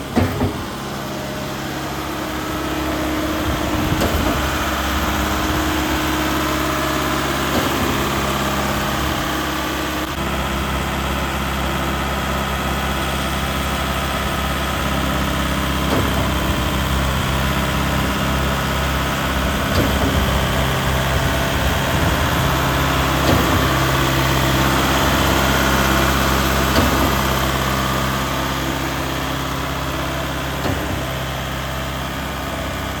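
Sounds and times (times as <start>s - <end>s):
diesel engine idling: 0.0s - 33.0s
sharp knocks: 0.1s - 0.9s.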